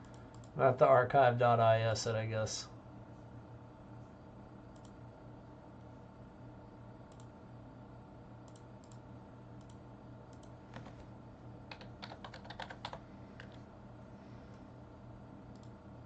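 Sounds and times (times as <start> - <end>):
keyboard typing clicks: 0.0 - 0.5, 4.7 - 5.0, 7.1 - 7.3, 8.4 - 9.0, 9.6 - 11.0, 11.7 - 13.6, 15.5 - 15.8
steady low hum: 0.0 - 16.0.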